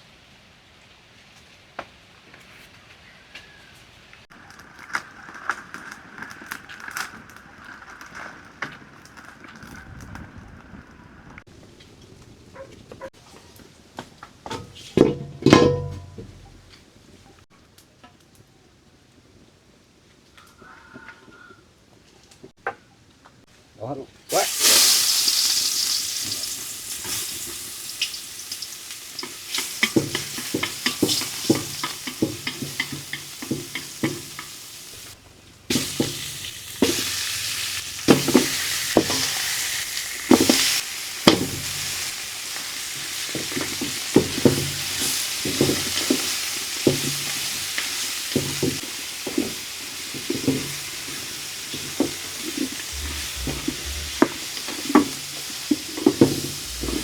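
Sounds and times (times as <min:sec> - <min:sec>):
food sizzling in a pan: 0:24.3 - 0:57.0
utensil scraping a pan: 0:29.2 - 0:39.8, 0:50.3 - 0:55.3, 0:56.0 - 0:57.0.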